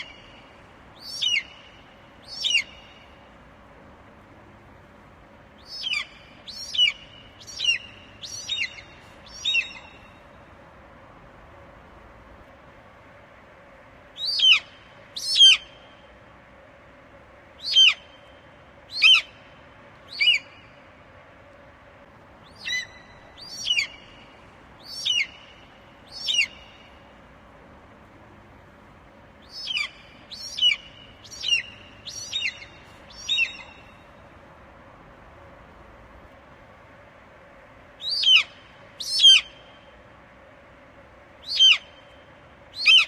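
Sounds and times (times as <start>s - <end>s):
eagle calling: 1.0s - 1.7s, 2.3s - 3.1s, 5.6s - 10.1s, 14.2s - 15.7s, 17.6s - 18.1s, 20.1s - 20.6s, 22.5s - 24.2s, 24.8s - 26.9s, 29.4s - 34.0s, 38.0s - 39.6s, 41.4s - 42.0s, 42.8s - 43.0s.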